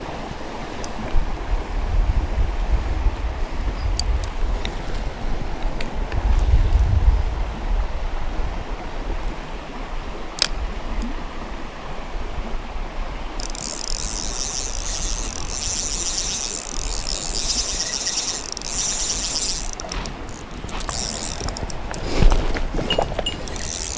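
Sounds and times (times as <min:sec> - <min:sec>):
stream water rushing: 0:08.0 - 0:23.9
fishing reel whirring rattle: 0:13.4 - 0:23.9.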